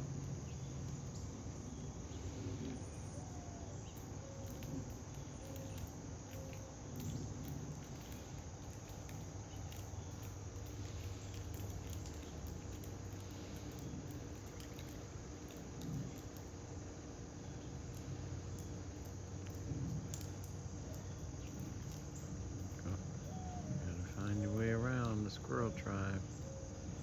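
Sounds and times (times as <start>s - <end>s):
crickets chirring: 0.0s - 27.0s
light pattering: 3.8s - 16.8s, 17.5s - 27.0s.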